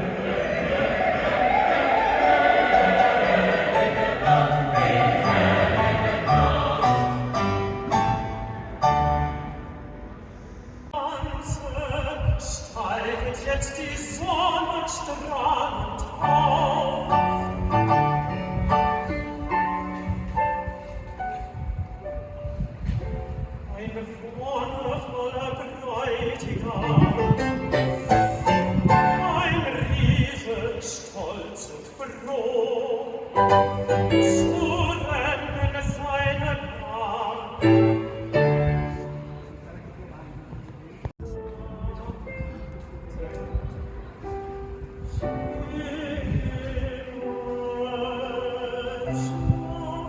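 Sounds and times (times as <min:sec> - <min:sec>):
person singing with vibrato: 0:00.0 - 0:08.6, 0:11.0 - 0:18.7, 0:45.0 - 0:50.0
sustained instrumental chords: 0:00.0 - 0:10.2.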